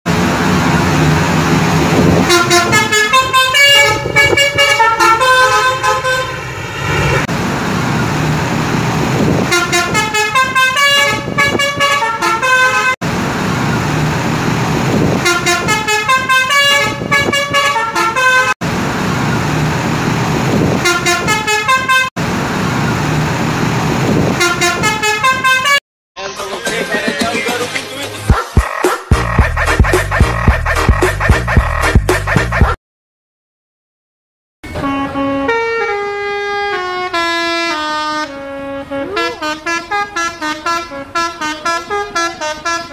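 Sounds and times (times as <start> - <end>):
bus engine: 0.0 - 25.8, 34.6 - 42.9
street noise: 0.1 - 32.8, 34.6 - 42.9
multi-tone bus horn jingles: 2.0 - 6.6, 9.4 - 13.0, 15.1 - 18.6, 20.8 - 22.1, 24.3 - 25.8, 34.6 - 42.9.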